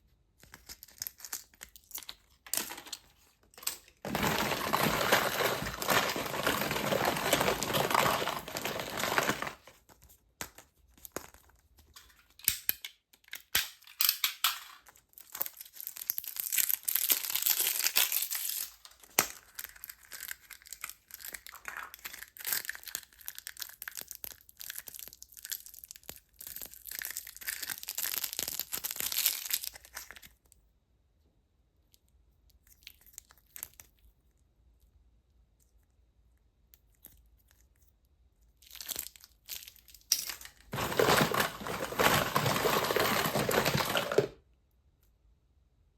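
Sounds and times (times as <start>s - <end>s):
wrappers torn and crinkled: 3.6s - 9.8s, 14.9s - 30.4s, 38.6s - 44.4s.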